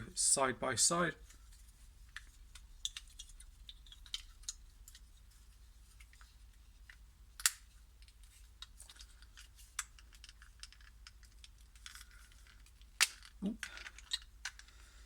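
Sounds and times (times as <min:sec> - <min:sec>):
plastic toy clicks and snaps: 0:07.4 - 0:07.6.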